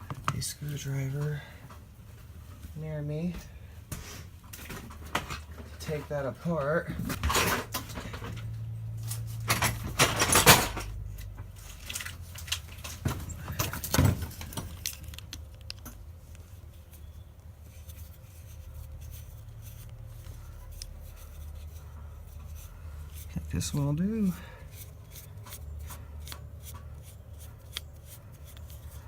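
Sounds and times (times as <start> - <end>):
metal tools clinking and rattling: 9.1 - 11.0.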